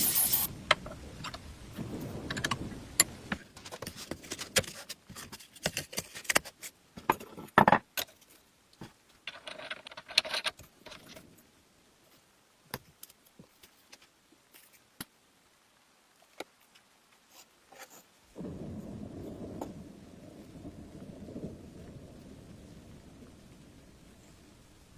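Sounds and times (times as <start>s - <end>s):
metal parts and tools clinking: 0.0s - 0.5s.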